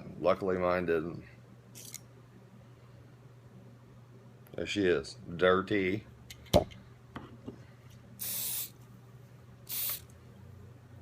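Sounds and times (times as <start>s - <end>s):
aerosol spray can hissing: 8.2s - 8.8s, 9.7s - 10.1s.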